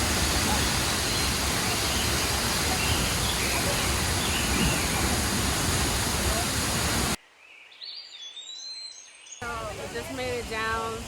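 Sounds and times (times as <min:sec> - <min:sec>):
large waterfall rushing: 0:00.0 - 0:07.2.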